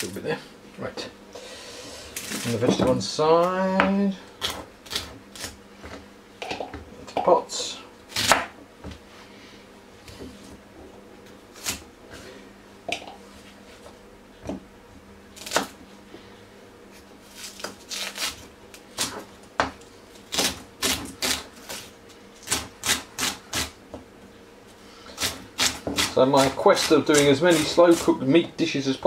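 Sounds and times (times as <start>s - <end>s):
knife chopping on a chopping board: 8.1s - 8.6s, 25.2s - 28.5s.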